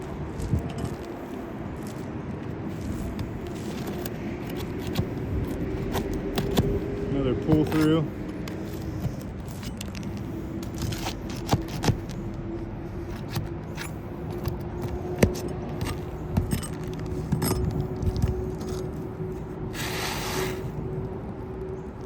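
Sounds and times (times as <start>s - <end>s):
steady low hum: 0.0s - 22.0s
tool scraping roof shingles: 2.8s - 12.3s.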